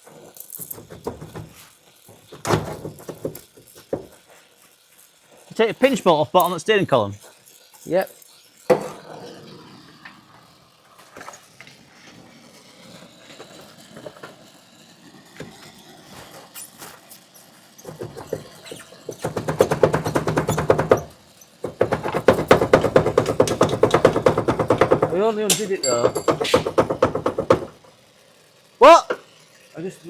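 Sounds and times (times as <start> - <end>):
pneumatic wrench rattling: 0.0 - 10.6, 16.4 - 28.2
tools clicking: 17.8 - 27.0.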